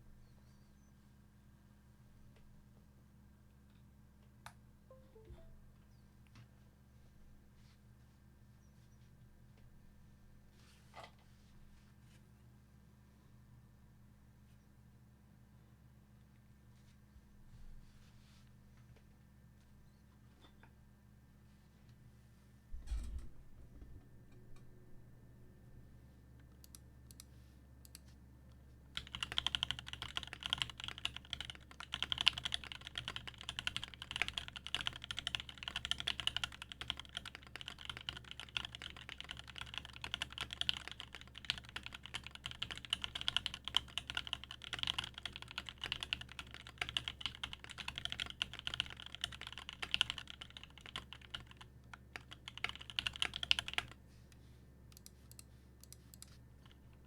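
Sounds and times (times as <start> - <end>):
mechanical keyboard typing: 29.0 - 54.0.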